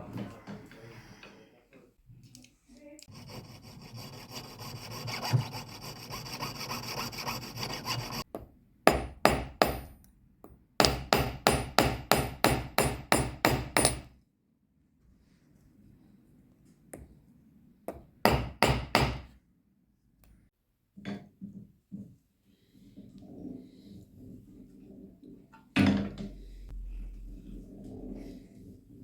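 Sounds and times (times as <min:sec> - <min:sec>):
steady rasping: 0:03.1 - 0:08.3
hammer striking metal on anvil: 0:08.9 - 0:09.9, 0:10.8 - 0:14.1.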